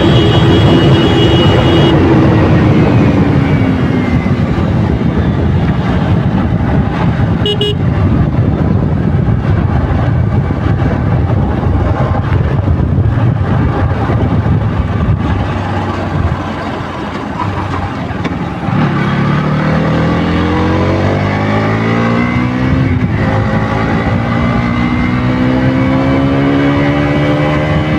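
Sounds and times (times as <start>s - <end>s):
short horn beep: 0.0s - 2.0s, 7.4s - 7.8s
motorcycle engine accelerating: 0.0s - 27.9s.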